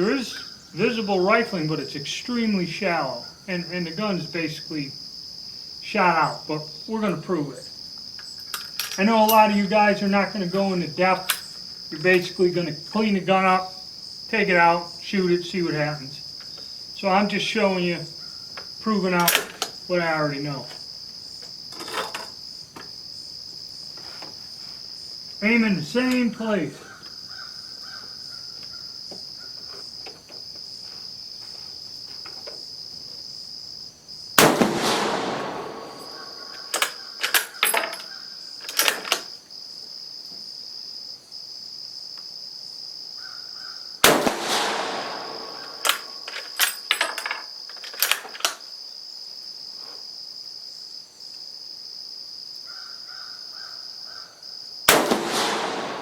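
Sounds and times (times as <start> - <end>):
high insect trill: 0.0 - 56.0
rifle shots: 34.4 - 36.8, 44.0 - 46.3, 54.9 - 56.0
metallic bolt clacks: 44.8 - 48.6.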